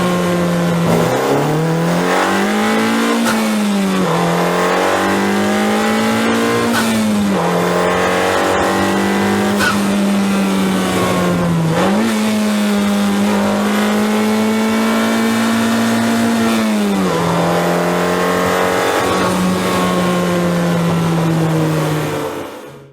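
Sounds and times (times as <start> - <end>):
car engine revving hard: 0.0 - 22.8.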